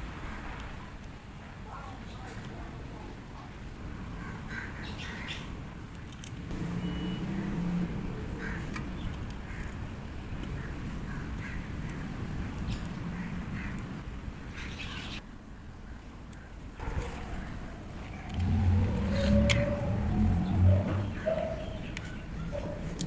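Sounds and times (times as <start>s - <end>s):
birds calling: 6.5s - 15.2s, 16.4s - 23.0s
low background rumble: 16.8s - 23.0s.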